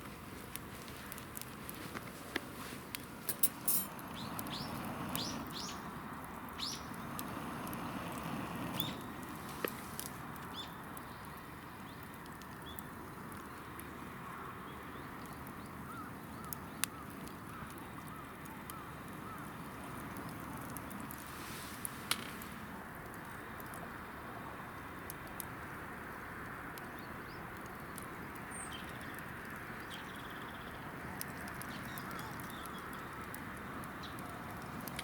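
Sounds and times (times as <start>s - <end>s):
campfire crackling and popping: 0.0s - 35.0s
small birds chirping: 2.6s - 14.0s, 14.6s - 21.2s, 26.8s - 35.0s.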